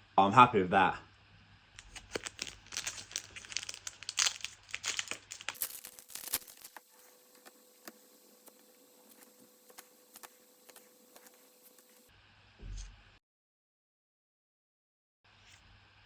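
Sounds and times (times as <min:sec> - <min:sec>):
foil wrapper crinkling and tearing: 0:01.8 - 0:12.1.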